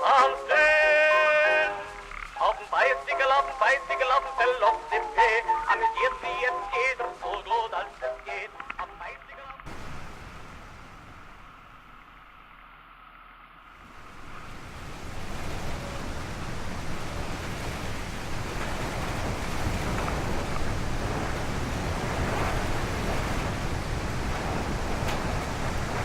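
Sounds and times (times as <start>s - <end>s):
car driving through blizzard: 9.6s - 26.0s.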